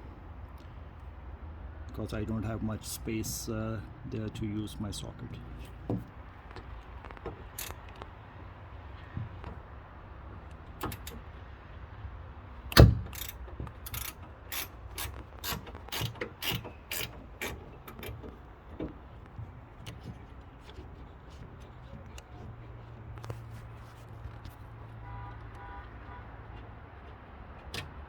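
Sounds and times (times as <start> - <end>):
ratchet wrench clicking: 7.5 - 8.0, 12.7 - 18.2.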